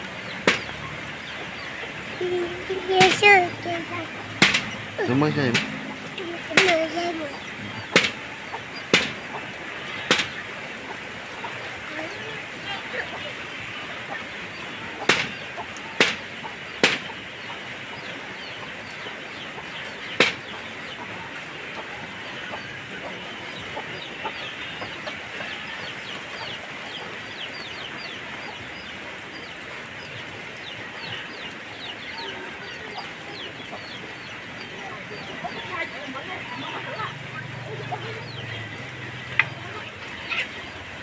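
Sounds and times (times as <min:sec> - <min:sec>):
chickens clucking: 0:00.0 - 0:41.0
chicks peeping: 0:00.0 - 0:41.0
sharp knocks: 0:00.4 - 0:00.9, 0:03.0 - 0:09.4, 0:10.1 - 0:10.4, 0:15.1 - 0:15.4, 0:16.0 - 0:17.2, 0:20.2 - 0:20.5.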